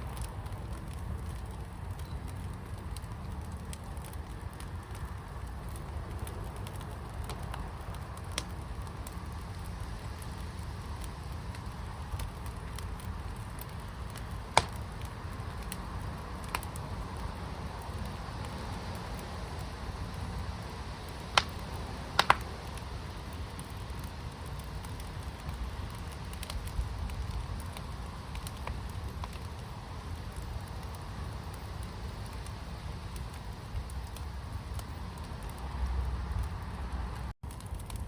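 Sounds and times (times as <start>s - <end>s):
fire crackling: 0.0s - 38.0s
fire pit burning with low rumble: 0.0s - 38.0s
sharp pop from fire: 14.5s - 14.9s, 21.3s - 22.6s.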